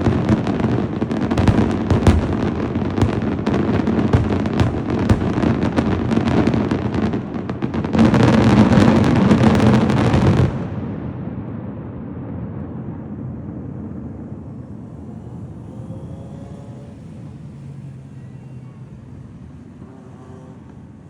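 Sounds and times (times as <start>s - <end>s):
low rumble: 0.0s - 7.7s
fireworks bangs and crackling: 0.0s - 15.6s.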